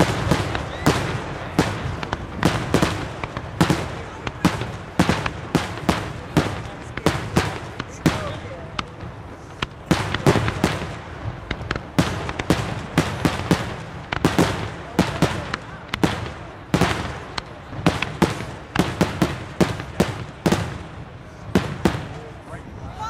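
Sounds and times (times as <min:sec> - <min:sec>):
firecrackers cracking and banging: 0:00.0 - 0:22.6.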